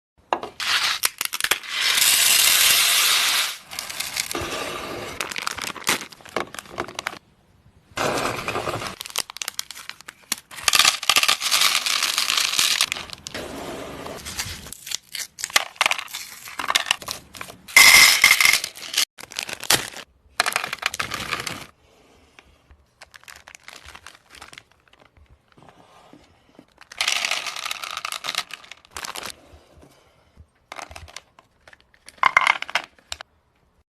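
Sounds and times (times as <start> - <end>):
plastic wrappers crinkling: 5.2 - 7.2, 8.9 - 13.3, 18.7 - 21.6, 22.9 - 25.4, 26.7 - 29.4.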